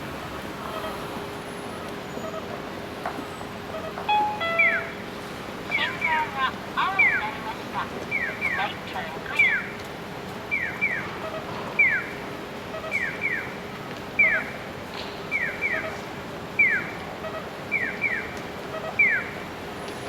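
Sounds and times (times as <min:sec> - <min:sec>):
electronic bird-like chirps: 0:05.7 - 0:09.8.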